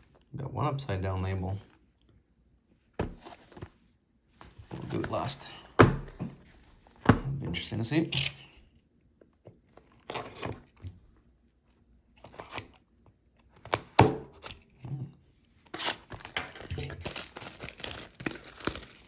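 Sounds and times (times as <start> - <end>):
packaging tearing and crinkling: 15.8 - 19.0.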